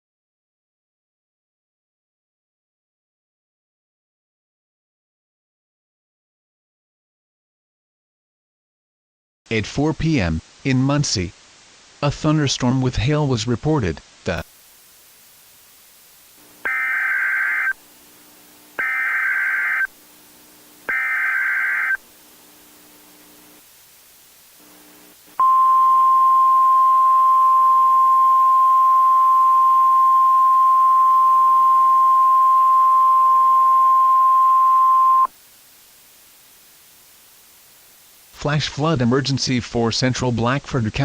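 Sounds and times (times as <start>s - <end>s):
steady attention tone: 16.4s - 23.6s, 24.6s - 35.3s
digital data screech: 16.7s - 17.8s, 18.8s - 19.9s, 20.9s - 22.0s.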